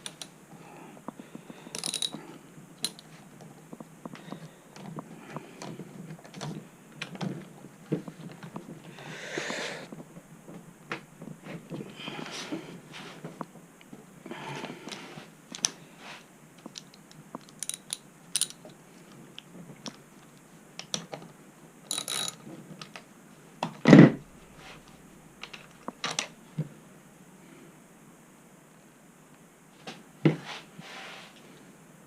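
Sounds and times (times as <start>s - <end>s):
hand tools clicking and knocking: 1.7s - 2.2s.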